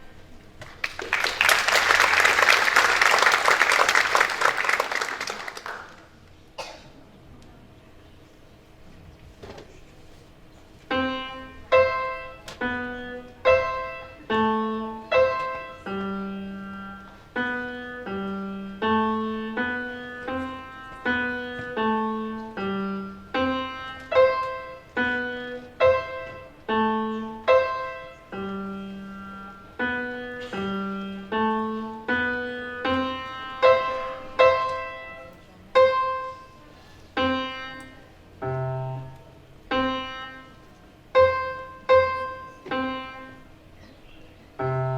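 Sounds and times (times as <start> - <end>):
slow piano chords: 10.8 - 43.9, 44.5 - 44.9.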